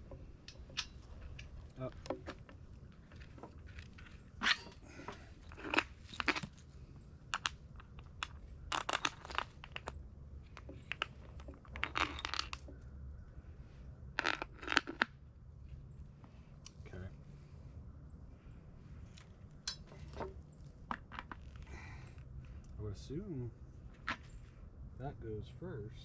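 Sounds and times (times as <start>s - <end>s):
metal hardware clinking: 0.4s - 2.4s, 4.4s - 6.5s, 10.6s - 12.8s, 19.6s - 20.4s.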